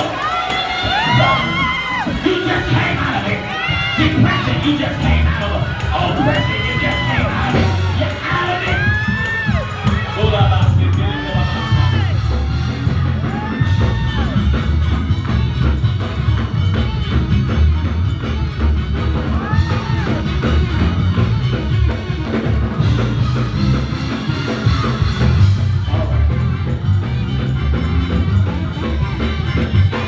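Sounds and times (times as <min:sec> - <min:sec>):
church band music: 0:00.0 - 0:30.0
drums: 0:00.0 - 0:30.0
heavy bass line: 0:00.0 - 0:30.0.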